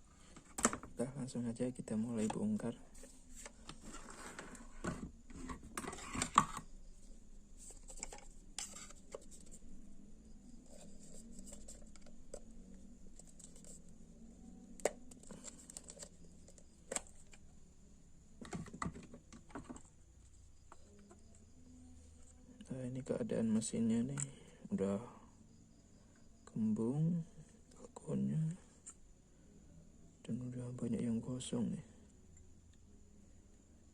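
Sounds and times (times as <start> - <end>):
plastic scraping and clicking: 0.3 - 0.9, 3.0 - 6.7, 7.6 - 9.6, 10.7 - 13.9, 14.7 - 17.4, 18.4 - 19.9.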